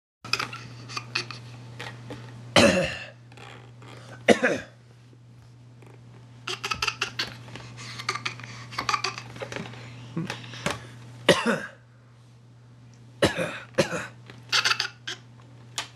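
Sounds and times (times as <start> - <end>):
baby coughing: 2.6 - 3.2, 4.3 - 4.8, 11.3 - 11.8, 13.2 - 15.2.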